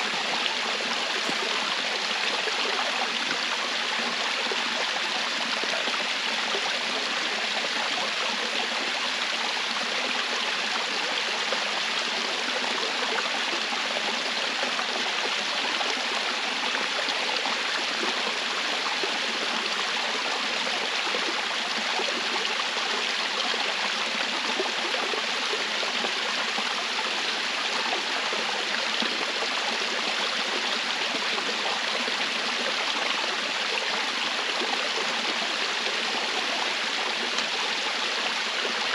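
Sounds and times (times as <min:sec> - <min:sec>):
rushing stream water: 0:00.0 - 0:38.9.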